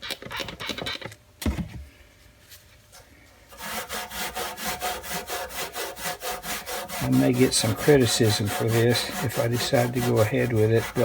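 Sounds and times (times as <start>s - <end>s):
hand scrubbing metal toolbox: 3.5s - 11.0s.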